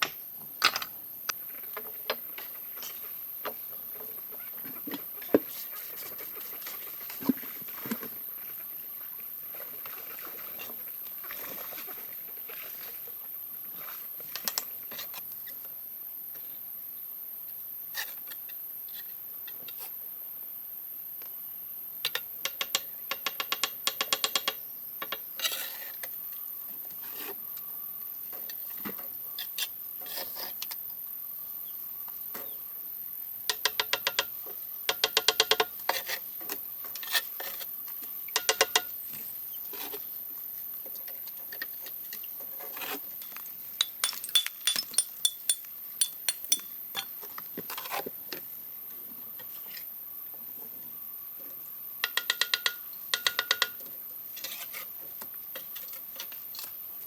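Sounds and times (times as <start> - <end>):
faint steady hiss: 0.0 - 57.0
light clinking taps: 43.8 - 47.1.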